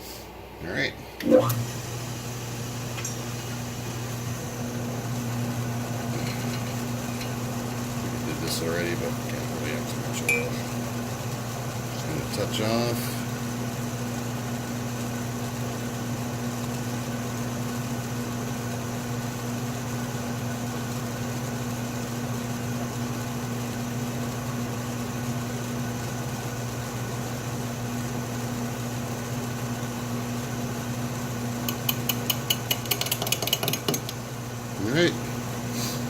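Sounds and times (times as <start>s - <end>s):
metal lathe motor humming: 1.2s - 13.8s, 31.6s - 35.6s
cutting tool ticking on workpiece: 31.7s - 34.1s.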